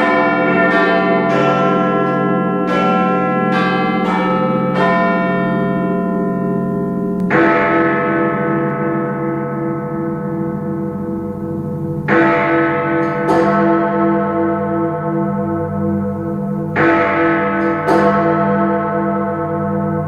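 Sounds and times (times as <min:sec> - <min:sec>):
clock chime bells: 0:00.0 - 0:20.0
deep hour bell striking: 0:00.0 - 0:20.0.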